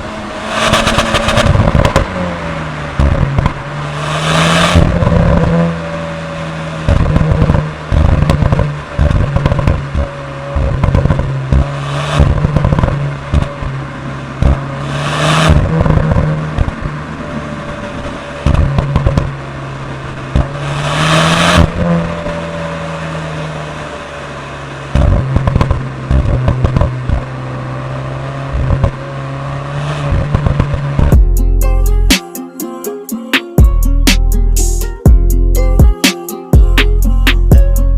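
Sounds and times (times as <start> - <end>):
car engine under hard driving: 0.0 - 32.2, 36.6 - 37.9
exhaust pops and crackles: 0.5 - 27.7, 28.5 - 29.2, 29.9 - 31.4.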